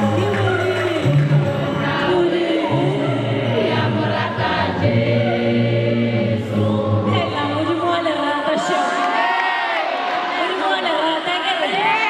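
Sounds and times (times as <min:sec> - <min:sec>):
group singing gospel: 0:00.0 - 0:08.1.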